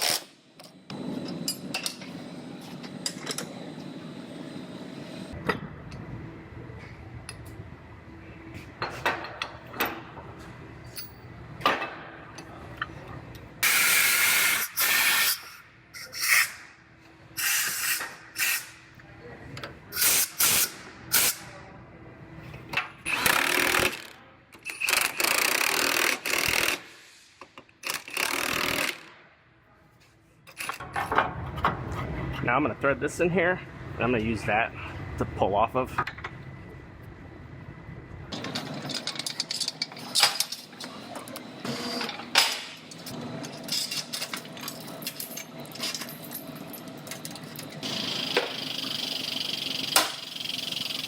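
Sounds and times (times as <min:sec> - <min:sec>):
pneumatic impact wrench bursts: 0:00.0 - 0:00.3, 0:13.6 - 0:16.6, 0:17.4 - 0:18.8, 0:19.9 - 0:21.4, 0:23.1 - 0:29.1, 0:47.8 - 0:51.0.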